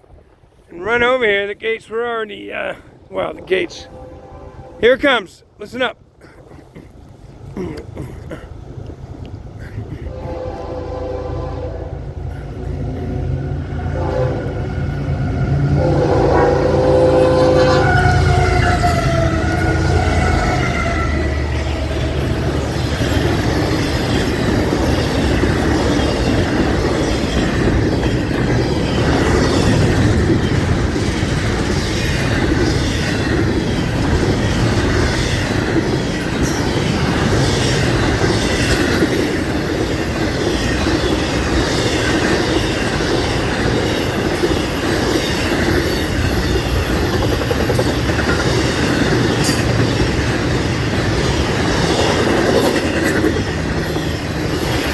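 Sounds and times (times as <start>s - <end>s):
train cars rumbling: 0.0s - 54.9s
wheels clicking over rail joints: 17.8s - 54.9s.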